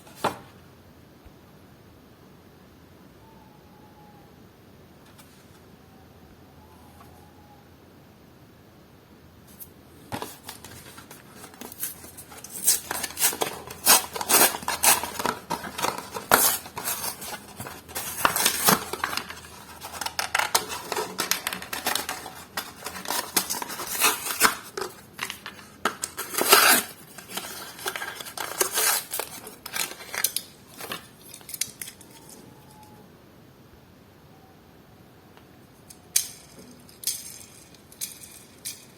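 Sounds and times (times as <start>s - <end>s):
plastic packaging clicks and crackles: 10.1s - 32.4s.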